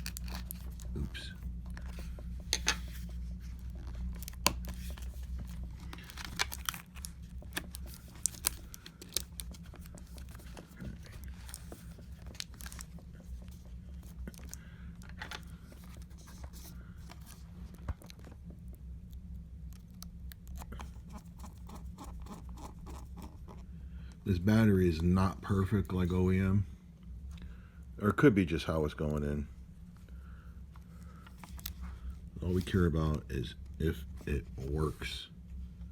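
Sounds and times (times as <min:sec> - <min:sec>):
plastic crinkling: 0:00.0 - 0:18.4
steady low hum: 0:00.0 - 0:35.9.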